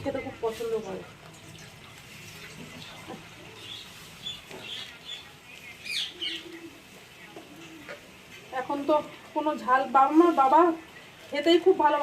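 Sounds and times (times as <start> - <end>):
small birds chirping: 2.4 - 8.5.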